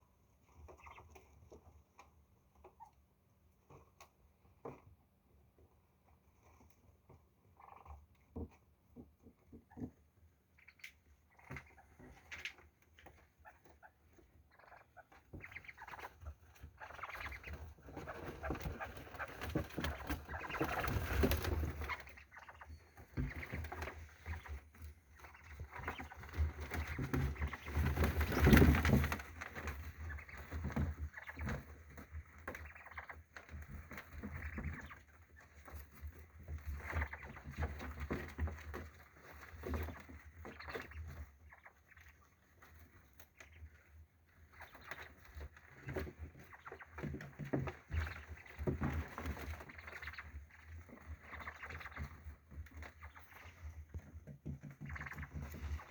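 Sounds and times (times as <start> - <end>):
chicks calling softly: 0.4 - 3.0, 6.4 - 55.9
rustling and knocks: 15.2 - 41.3.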